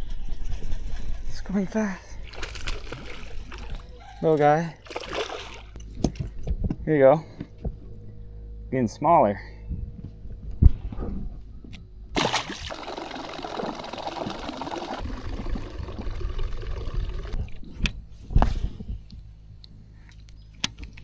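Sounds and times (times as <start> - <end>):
river water splashing: 2.0 - 5.8, 12.2 - 16.0.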